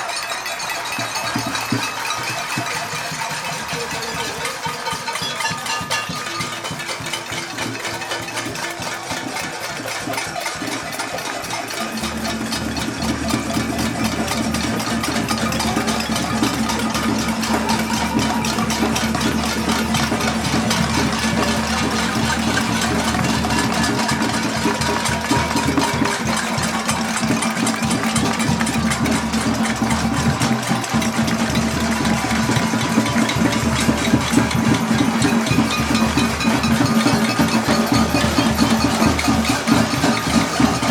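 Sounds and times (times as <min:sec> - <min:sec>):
crowd banging objects: 0:00.0 - 0:40.9.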